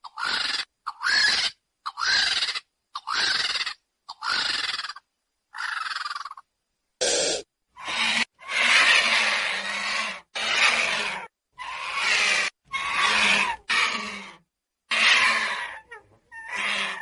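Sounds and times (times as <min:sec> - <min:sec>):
vulture harsh hissing calls: 0:07.0 - 0:14.2.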